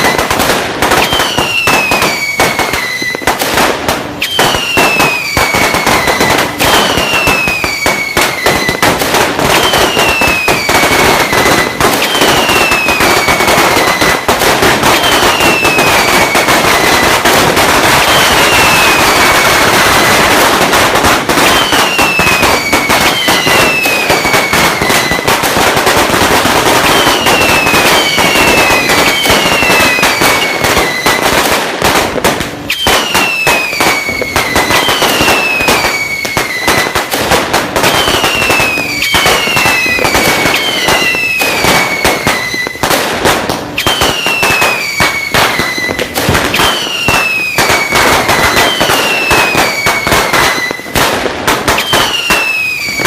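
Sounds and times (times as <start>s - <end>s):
firecrackers cracking rapidly: 0.0s - 53.0s
falling whistles: 4.2s - 8.8s, 43.8s - 50.8s.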